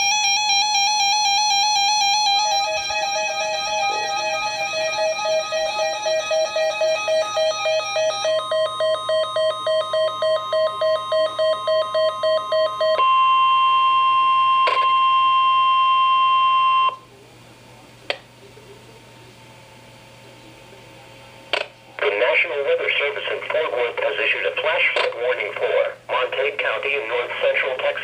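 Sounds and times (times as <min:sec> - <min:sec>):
faint hum: 0:00.0 - 0:28.0
rapid electronic beeping: 0:00.1 - 0:13.0
steady alert tone: 0:01.6 - 0:12.0.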